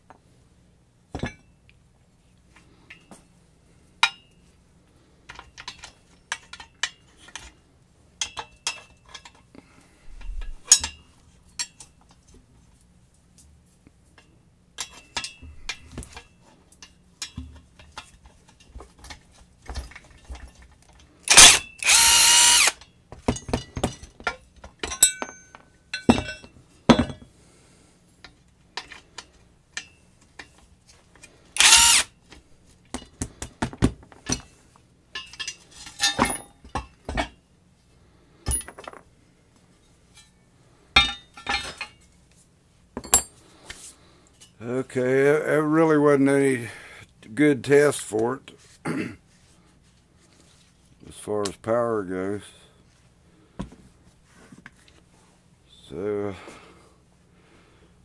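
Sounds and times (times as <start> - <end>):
metal tools clinking: 10.1 - 12.3, 14.8 - 27.2, 35.2 - 36.9, 41.0 - 42.0, 43.0 - 43.4
impact wrench running: 21.3 - 22.8, 31.6 - 32.1.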